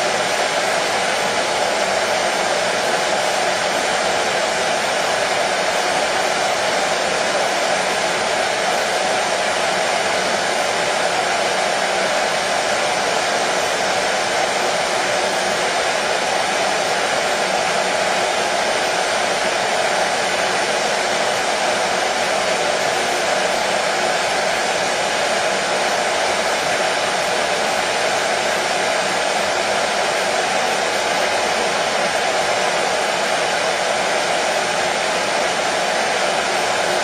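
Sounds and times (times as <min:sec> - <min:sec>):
hair dryer running: 0:00.0 - 0:37.0.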